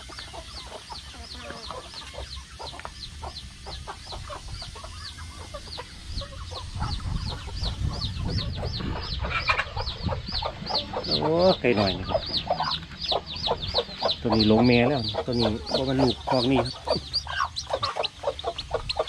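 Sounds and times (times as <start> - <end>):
chicks peeping: 0.0 - 19.0
hens clucking: 0.0 - 19.0
low rumble: 5.6 - 15.2.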